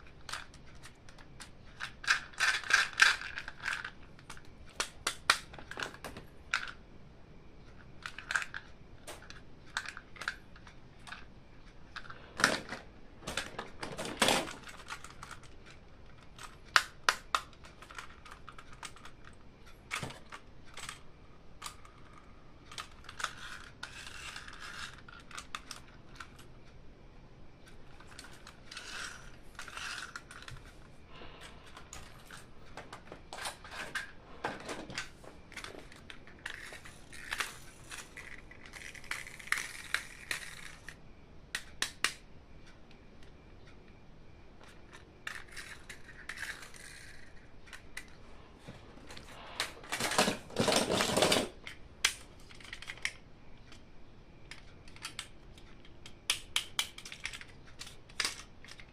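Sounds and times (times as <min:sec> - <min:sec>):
toy packaging clicks and taps: 0:00.2 - 0:06.8, 0:08.0 - 0:21.0, 0:31.7 - 0:42.2, 0:44.6 - 0:48.2, 0:49.1 - 0:53.8, 0:54.5 - 0:58.9
sharp plastic snaps: 0:41.5 - 0:42.2, 0:54.5 - 0:58.9.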